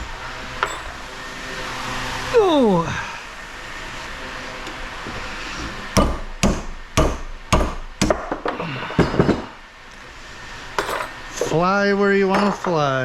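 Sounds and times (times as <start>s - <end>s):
hammer striking metal: 0.0s - 1.2s, 6.0s - 8.4s, 10.8s - 11.2s.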